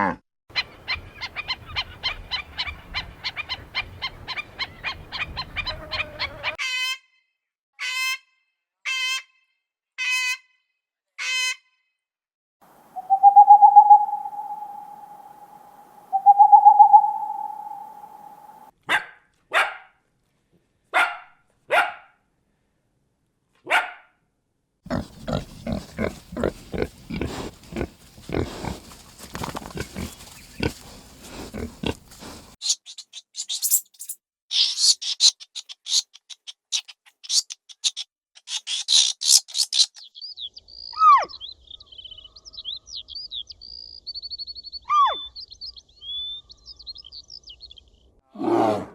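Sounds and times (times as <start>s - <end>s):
long steady animal calls: 0.5s - 6.6s, 12.7s - 18.7s, 24.9s - 32.6s
falling whistle: 13.0s - 18.7s
high busy chirping: 13.0s - 18.7s, 32.6s - 34.2s
short sharp barks: 18.8s - 19.9s, 21.0s - 22.1s, 23.6s - 24.1s
rapid low grunting: 24.9s - 32.6s.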